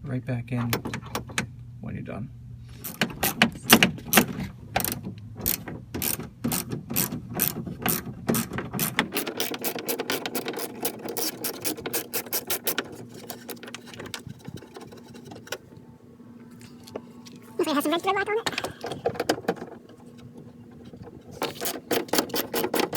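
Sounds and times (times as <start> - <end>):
ratchet wrench clicking: 9.1 - 13.5.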